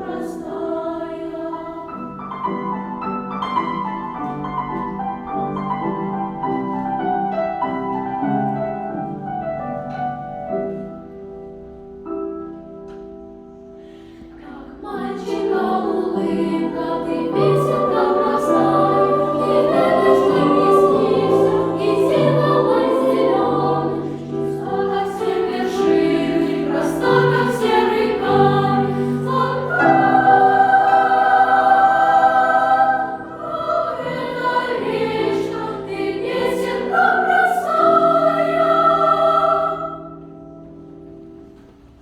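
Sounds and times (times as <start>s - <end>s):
choir singing: 0.0s - 3.8s, 14.1s - 40.8s.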